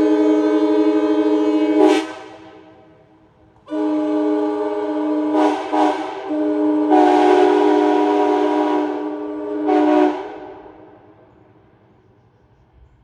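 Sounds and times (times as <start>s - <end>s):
train air horn blast: 0.0s - 3.0s, 3.6s - 11.0s.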